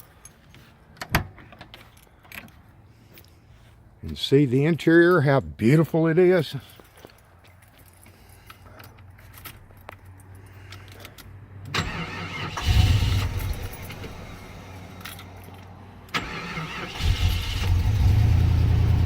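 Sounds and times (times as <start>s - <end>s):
car engine starting and running: 11.6s - 19.0s.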